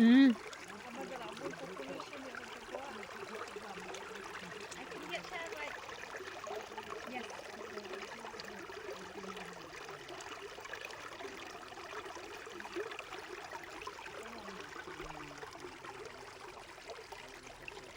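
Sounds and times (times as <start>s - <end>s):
stream babbling: 0.0s - 17.9s.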